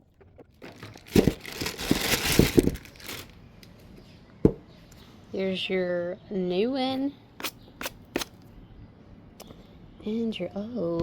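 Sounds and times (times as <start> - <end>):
packaging crinkling: 0.4 - 3.4.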